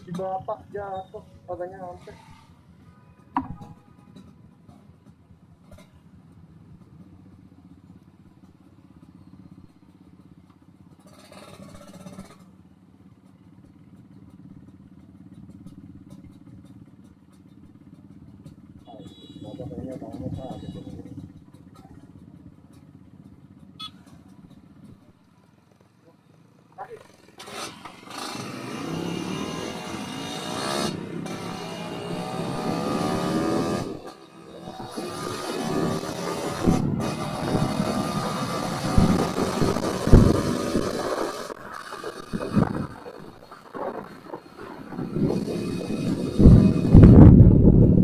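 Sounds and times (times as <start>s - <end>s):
two-stroke engine pulsing: 0.0s - 48.0s
rush of noise: 34.7s - 48.0s.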